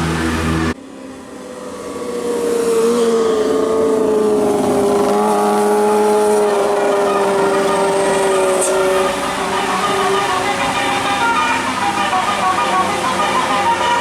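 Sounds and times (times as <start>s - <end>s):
musical air horn long note: 8.1s - 14.0s.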